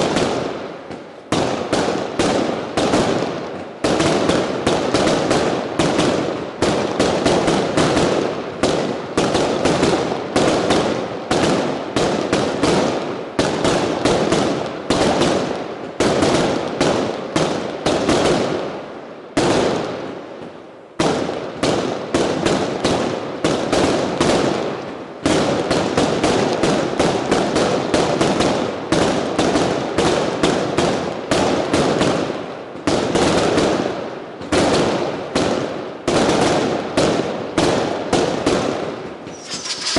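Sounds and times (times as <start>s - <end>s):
fireworks bangs: 34.5s - 39.9s.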